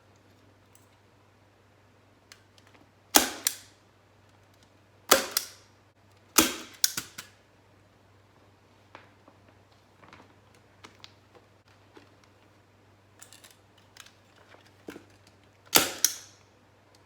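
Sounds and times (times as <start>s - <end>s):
staple gun firing staples: 3.2s - 3.8s, 5.1s - 5.7s, 6.4s - 7.4s, 15.7s - 16.4s.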